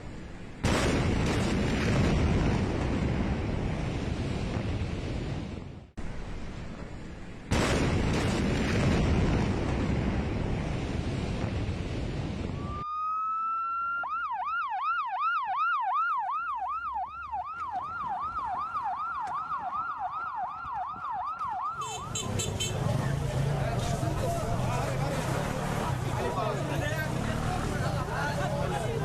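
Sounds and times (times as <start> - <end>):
emergency siren yelping: 12.6 - 22.2
loud steady rushing noise: 21.9 - 29.0.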